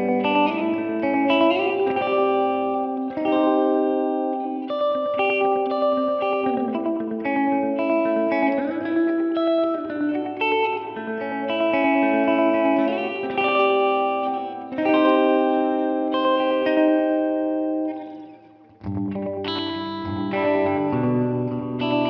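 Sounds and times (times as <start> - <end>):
electric guitar with delay: 0.0 - 22.0.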